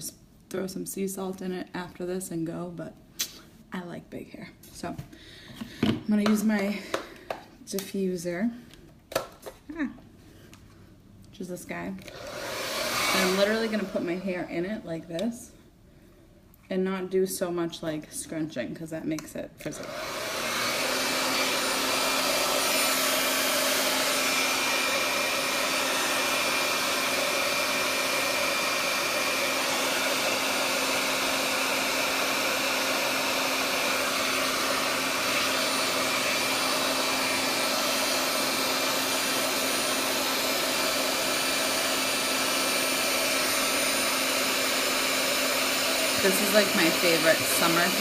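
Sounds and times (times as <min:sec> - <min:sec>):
hair dryer running: 0:05.5 - 0:08.0, 0:12.0 - 0:15.4, 0:19.2 - 0:48.0.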